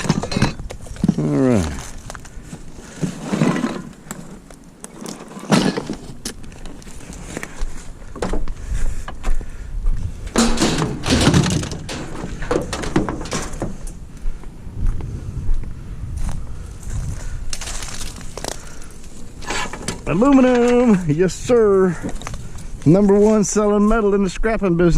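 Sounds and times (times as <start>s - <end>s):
scraping and rustling: 0.0s - 8.4s, 10.2s - 14.0s, 16.9s - 21.2s
scrap metal clanking: 3.0s - 4.0s, 5.0s - 6.2s, 10.3s - 14.0s, 19.4s - 21.0s.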